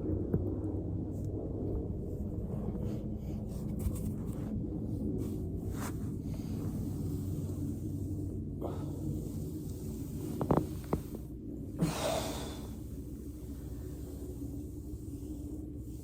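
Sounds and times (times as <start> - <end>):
steady low hum: 0.0 - 16.0
breath-like rush of air: 11.8 - 15.5.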